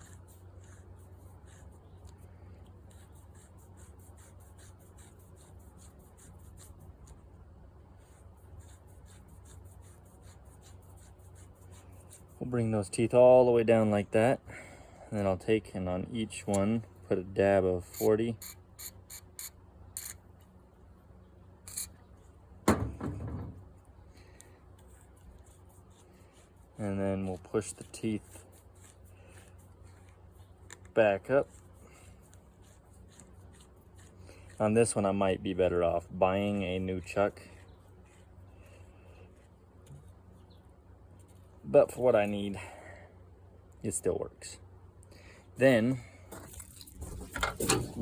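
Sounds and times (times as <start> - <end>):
steady low hum: 0.0 - 48.0
drill chuck scratching and ticking: 17.8 - 20.2, 21.7 - 22.0
sharp knock with rattle: 22.6 - 23.6.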